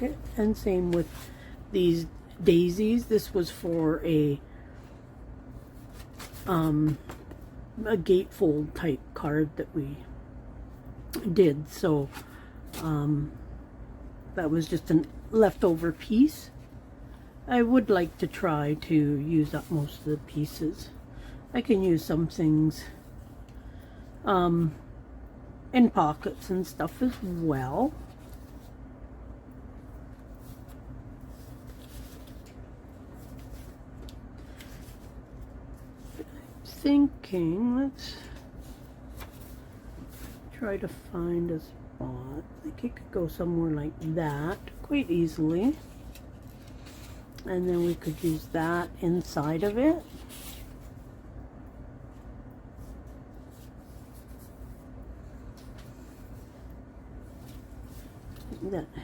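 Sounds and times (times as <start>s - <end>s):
paper and cards rustling: 0.0s - 4.1s, 5.6s - 7.6s, 14.6s - 24.0s, 25.8s - 28.9s, 29.8s - 37.2s, 37.9s - 41.0s, 43.3s - 51.2s, 52.1s - 59.0s
low background hum: 0.0s - 59.0s.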